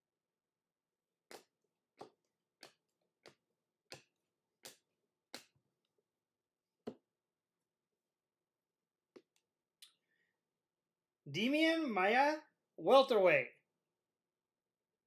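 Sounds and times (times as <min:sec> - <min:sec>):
cards flipping with soft snaps: 0:01.3 - 0:05.6.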